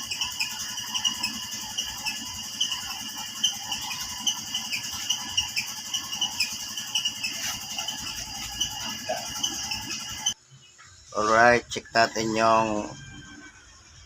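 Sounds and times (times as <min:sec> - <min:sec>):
insects trilling: 0:00.0 - 0:13.0
birds chirping: 0:03.6 - 0:13.0.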